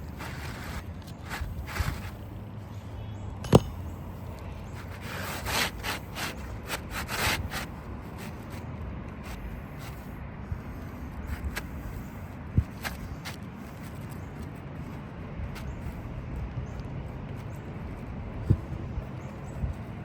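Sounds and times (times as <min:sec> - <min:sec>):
sharp knock: 0:03.4 - 0:03.8.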